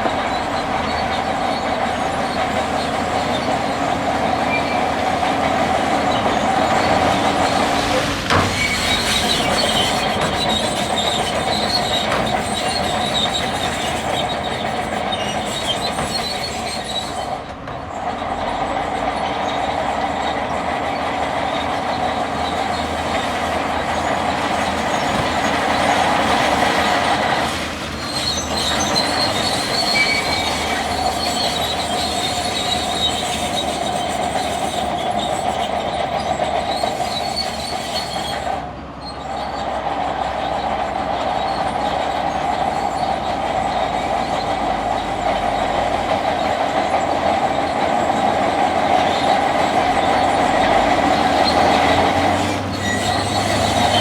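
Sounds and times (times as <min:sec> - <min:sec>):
bulldozer engine and tracks: 0:00.0 - 0:54.0
faint high squeals: 0:00.1 - 0:05.2, 0:27.0 - 0:39.8, 0:41.3 - 0:54.0.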